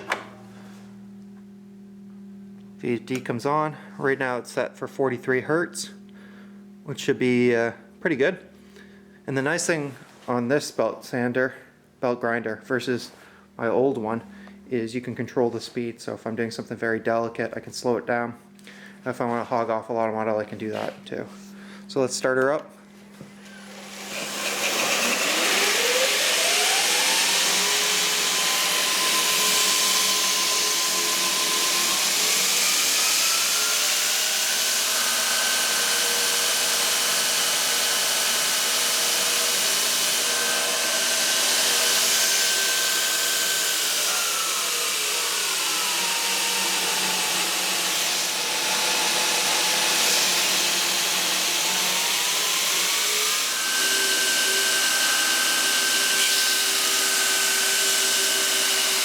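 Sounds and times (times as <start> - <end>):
belt grinder motor whine: 23.4 - 59.0.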